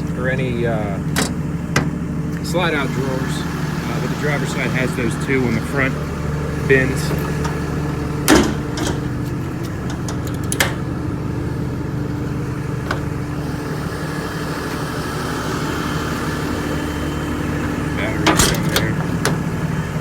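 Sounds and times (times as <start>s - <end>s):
diesel engine idling: 0.0s - 20.0s
sharp clicks and knocks: 1.1s - 2.0s, 8.3s - 10.9s, 12.8s - 13.3s, 18.2s - 19.5s.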